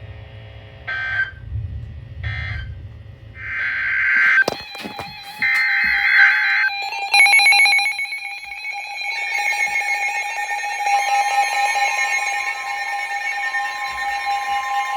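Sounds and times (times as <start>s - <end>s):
electronic alarm beeping: 3.4s - 9.8s.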